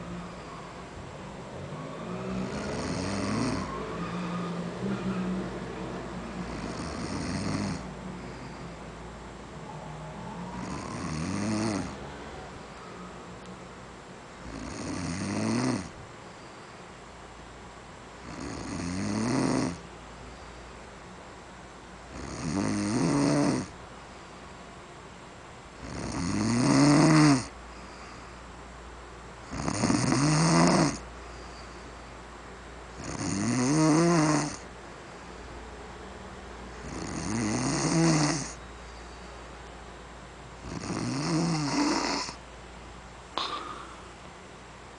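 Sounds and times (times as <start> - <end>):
person snoring: 2.3 - 3.8, 6.5 - 8.5, 10.6 - 12.0, 14.5 - 15.9, 18.2 - 19.8, 22.2 - 23.7, 25.8 - 27.5, 29.5 - 31.0, 33.0 - 34.6, 36.8 - 38.6, 40.6 - 42.4, 43.4 - 44.1
quiet breathing: 7.8 - 10.9, 11.8 - 13.5, 27.5 - 28.8, 31.0 - 32.3, 38.5 - 39.7, 43.3 - 44.9.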